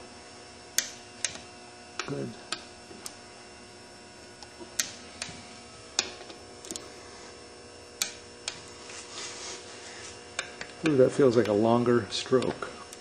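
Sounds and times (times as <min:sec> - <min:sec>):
steady electrical hum: 0:00.0 - 0:13.0
tools clicking and tapping: 0:08.0 - 0:08.6.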